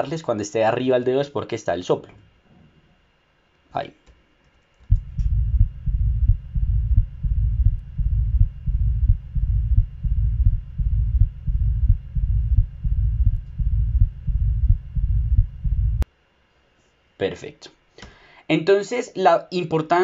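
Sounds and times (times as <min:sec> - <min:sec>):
heart murmur: 0:04.9 - 0:16.0
heartbeat through stethoscope: 0:04.9 - 0:16.0.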